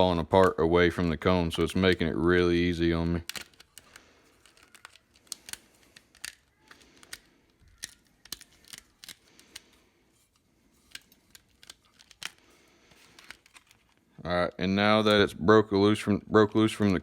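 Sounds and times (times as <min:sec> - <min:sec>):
speaker surround cracking and tearing: 0:03.1 - 0:06.4.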